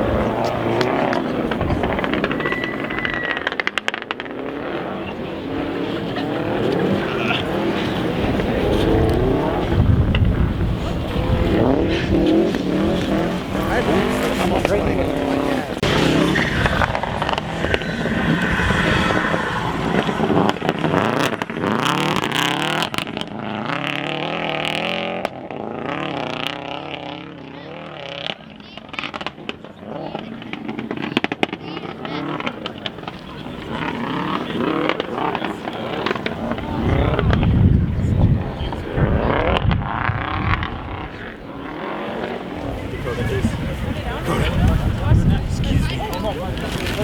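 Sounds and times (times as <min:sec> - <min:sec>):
sharp exhaust pops: 0:00.0 - 0:04.8, 0:07.8 - 0:25.4
rally car engine accelerating: 0:00.0 - 0:47.0.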